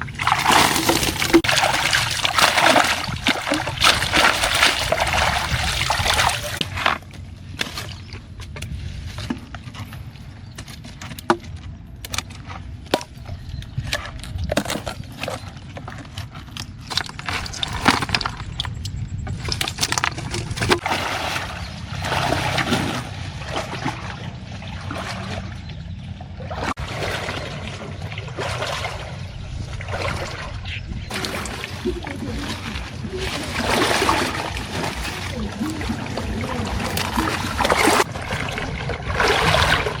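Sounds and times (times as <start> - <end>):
water splashing: 0.0 - 7.0, 19.4 - 40.0.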